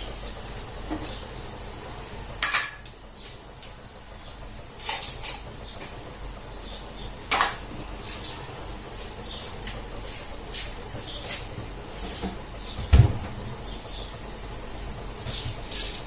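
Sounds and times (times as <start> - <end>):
kitchen utensils clinking: 2.4 - 3.0.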